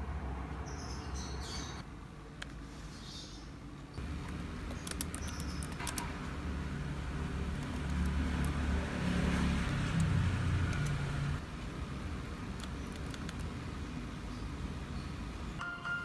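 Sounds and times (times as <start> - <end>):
low rumble with hiss: 4.0 - 15.6.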